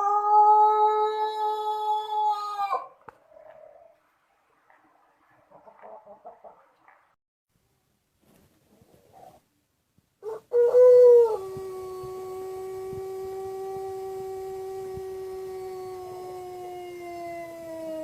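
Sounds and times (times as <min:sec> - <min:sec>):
rooster crowing: 0:00.0 - 0:03.0, 0:10.2 - 0:18.0.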